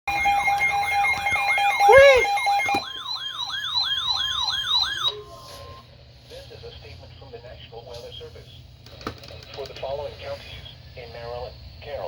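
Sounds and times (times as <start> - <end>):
electronic siren yelping: 0.1 - 5.6.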